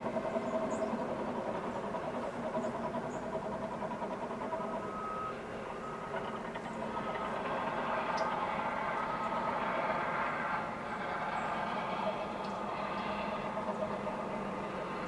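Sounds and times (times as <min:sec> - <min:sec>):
reversing alarm beeping: 0:04.6 - 0:06.1.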